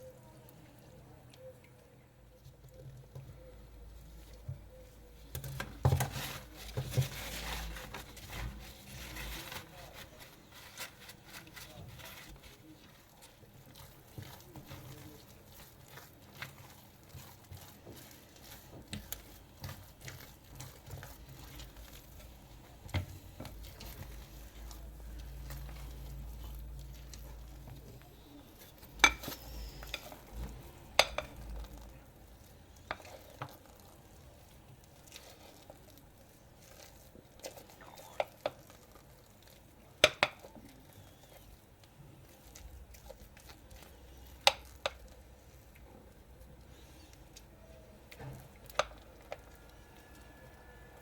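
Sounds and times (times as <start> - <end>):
utensil scraping in mixing bowl: 3.4 - 51.0.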